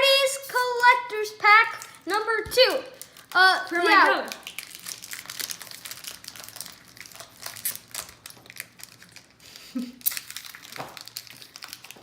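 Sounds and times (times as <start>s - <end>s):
card pack wrapper crinkling: 2.9s - 12.0s.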